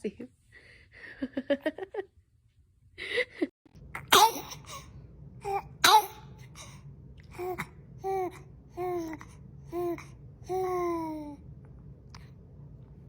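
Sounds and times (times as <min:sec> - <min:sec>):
baby sneezing: 0:04.0 - 0:04.9, 0:05.8 - 0:06.3
baby vocal sounds: 0:04.0 - 0:11.4.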